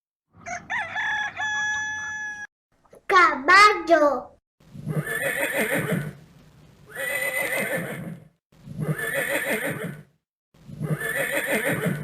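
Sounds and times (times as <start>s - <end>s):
horse neighing: 4.8s - 6.2s, 6.9s - 10.1s, 10.7s - 12.0s.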